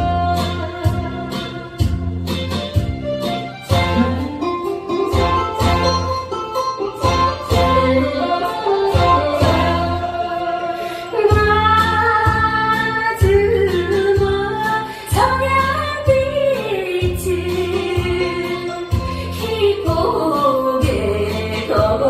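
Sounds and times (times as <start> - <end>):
woman singing with vibrato: 0.0 - 2.2, 7.0 - 22.0
backing band with steady beat: 0.0 - 22.0.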